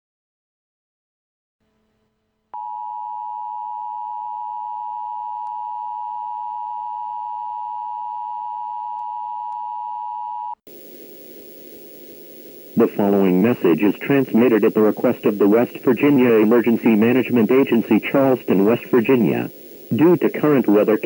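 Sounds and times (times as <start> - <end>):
faint hiss: 10.7 - 21.0.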